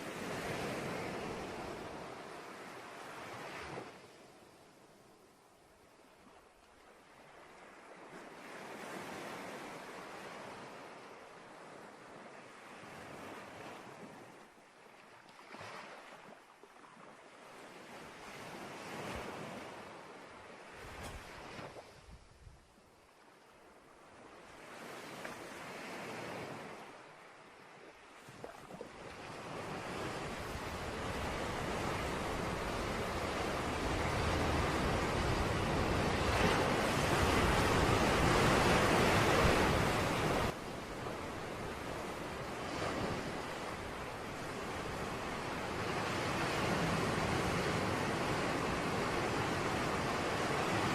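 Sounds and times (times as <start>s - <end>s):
ocean waves breaking on beach: 0.0s - 5.1s, 5.9s - 22.4s, 23.0s - 50.9s.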